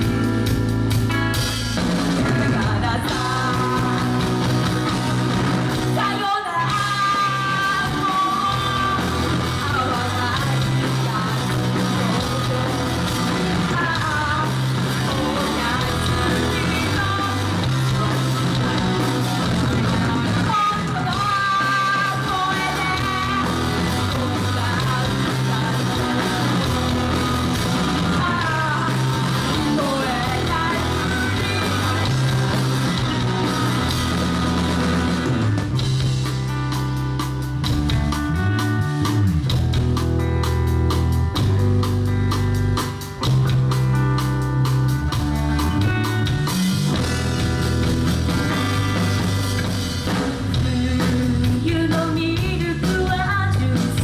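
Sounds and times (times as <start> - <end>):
busy drumming: 0.0 - 54.0
live rock band playing: 0.0 - 54.0
person singing: 2.2 - 34.2, 50.1 - 54.0.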